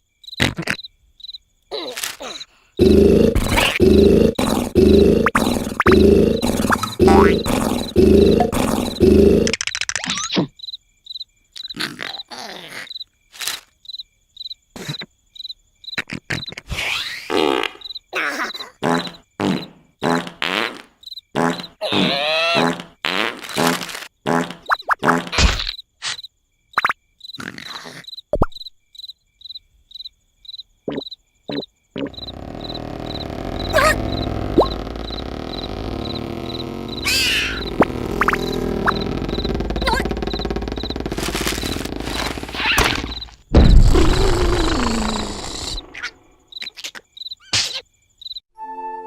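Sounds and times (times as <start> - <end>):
cricket chirping: 0.0 - 16.5, 17.3 - 22.9, 23.5 - 48.5
cartoon vocal noises: 1.7 - 10.5, 11.7 - 13.0, 18.1 - 18.8, 21.8 - 22.8, 31.5 - 43.2, 43.8 - 47.8
cartoon snoring: 2.2 - 9.6, 21.4 - 23.0, 31.5 - 46.0
low thud: 42.9 - 44.2.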